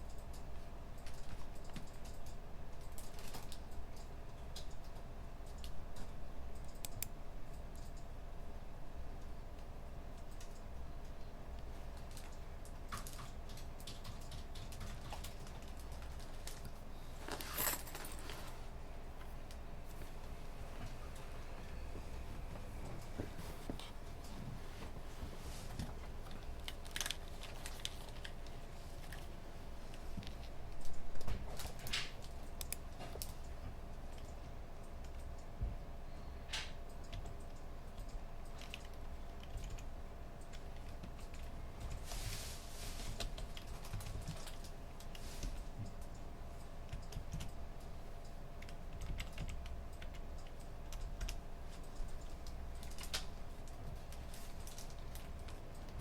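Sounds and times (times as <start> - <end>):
keyboard typing: 0.0 - 8.1, 9.6 - 16.9, 37.0 - 42.1, 43.2 - 56.0
low room hum: 0.0 - 56.0.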